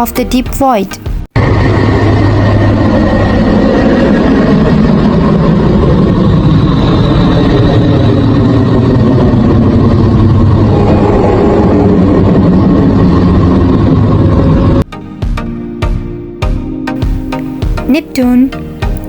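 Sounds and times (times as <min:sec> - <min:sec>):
low humming drone with hiss: 0:01.4 - 0:14.8.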